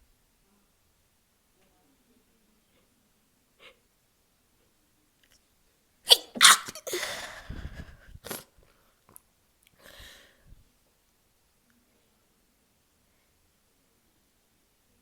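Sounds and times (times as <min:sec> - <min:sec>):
person sneezing: 0:06.1 - 0:07.7
noisy breath: 0:06.9 - 0:09.0, 0:09.8 - 0:10.6.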